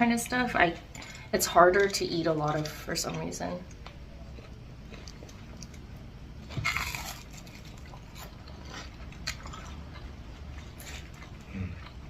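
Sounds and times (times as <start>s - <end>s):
chewing with crunches: 1.8s - 5.9s, 6.5s - 12.0s
crunchy bite into fried food: 6.5s - 9.6s.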